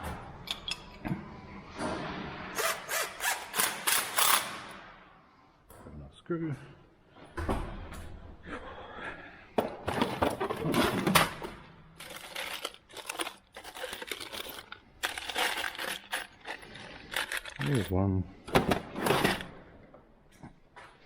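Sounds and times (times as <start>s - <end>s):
packaging crinkling and rustling: 12.0s - 18.0s.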